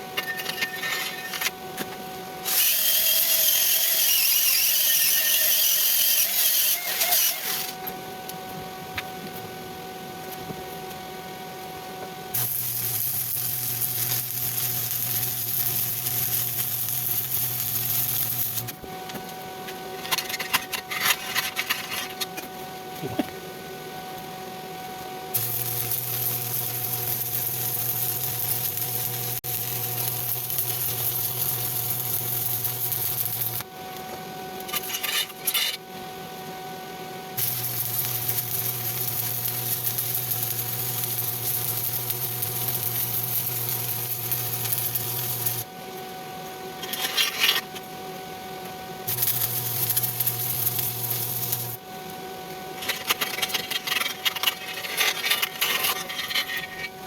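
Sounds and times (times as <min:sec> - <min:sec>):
welding arc crackling and hissing: 0:02.4 - 0:07.8, 0:12.3 - 0:18.8, 0:25.3 - 0:33.7, 0:37.4 - 0:45.7, 0:49.1 - 0:51.8.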